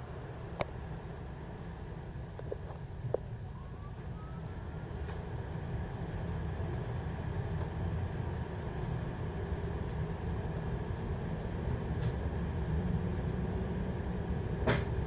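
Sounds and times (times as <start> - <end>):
faint rising whine: 0.0 - 8.1
train rumbling: 0.0 - 15.0.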